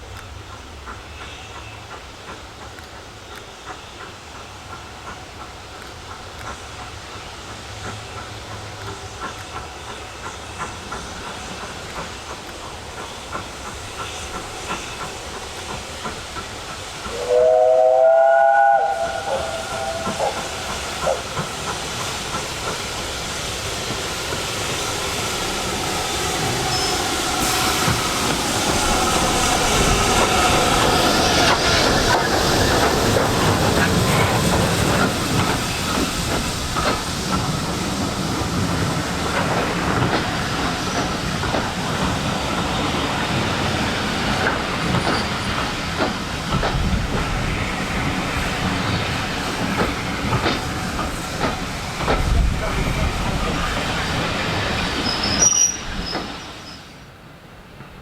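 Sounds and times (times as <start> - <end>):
carriages clattering on rails: 0.0 - 17.6, 18.9 - 58.0
hissing steam: 0.0 - 58.0
steam locomotive whistle: 17.0 - 21.4, 26.6 - 28.0, 55.0 - 56.9.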